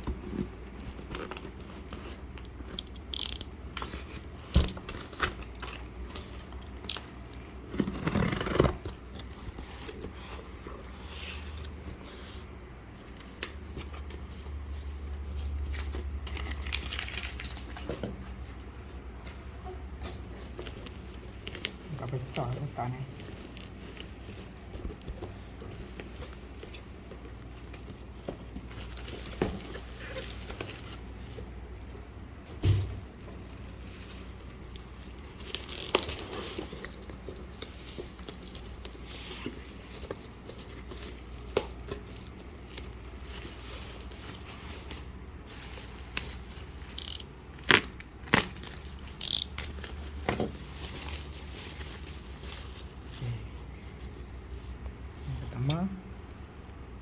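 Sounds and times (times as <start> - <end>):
cardboard packaging crinkling: 0.0 - 18.5, 33.5 - 54.4.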